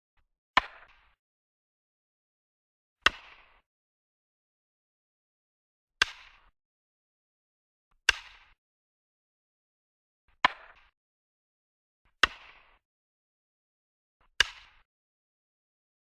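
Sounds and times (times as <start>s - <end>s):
wooden bat cracking against ball: 0.6s - 1.2s, 3.0s - 3.6s, 6.0s - 6.5s, 8.1s - 8.6s, 10.4s - 11.0s, 12.2s - 12.8s, 14.4s - 14.9s.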